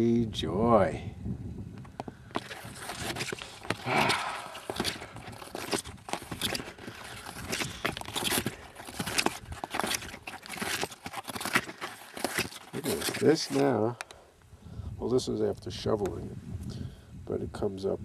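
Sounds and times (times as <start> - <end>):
snowshoe footsteps crunching snow: 2.3 - 13.8.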